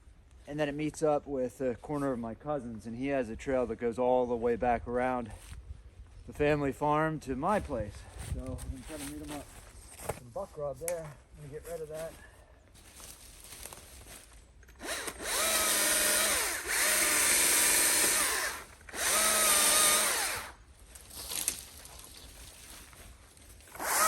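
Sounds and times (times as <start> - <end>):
electric saw motor whine: 14.8 - 20.6, 23.7 - 24.0.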